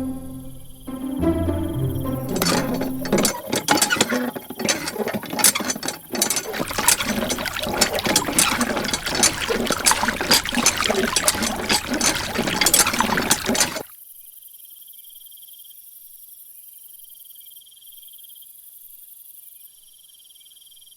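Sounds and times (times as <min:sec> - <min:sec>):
mechanical parts clicking and rattling: 0:02.2 - 0:13.8.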